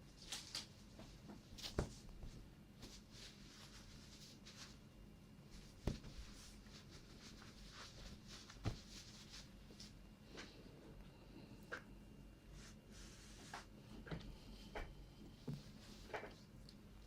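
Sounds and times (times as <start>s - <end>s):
soft brushing strokes: 1.6s - 10.4s, 12.2s - 17.0s.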